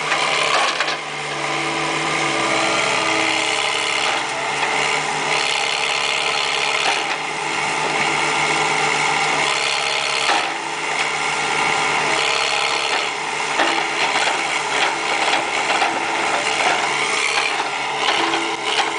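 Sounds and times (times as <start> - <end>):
backhoe engine running: 0.0 - 18.9.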